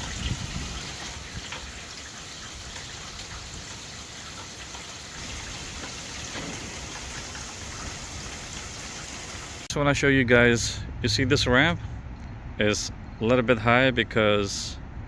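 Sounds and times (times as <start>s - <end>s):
wind rumble on microphone: 0.0s - 1.9s
rain drop ticks: 0.0s - 9.6s
rain hissing: 0.0s - 9.7s.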